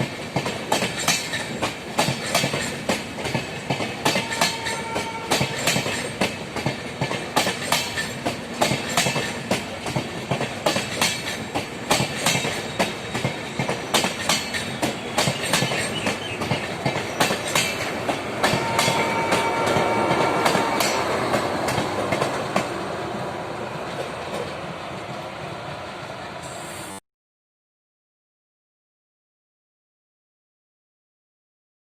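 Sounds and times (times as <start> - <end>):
train wheels clicking over rail joints: 0.0 - 22.9
locomotive horn: 4.1 - 5.8, 18.4 - 21.2.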